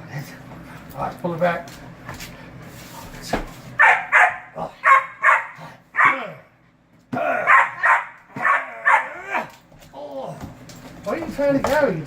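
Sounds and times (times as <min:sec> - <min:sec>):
puppy barking: 0:03.8 - 0:06.3, 0:07.3 - 0:09.5.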